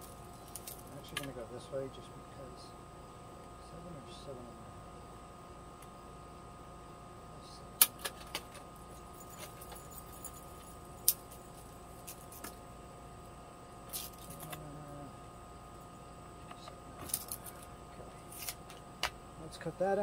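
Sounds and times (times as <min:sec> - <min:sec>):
faint steady hum: 0:00.0 - 0:20.0
tools rattling: 0:08.0 - 0:12.6.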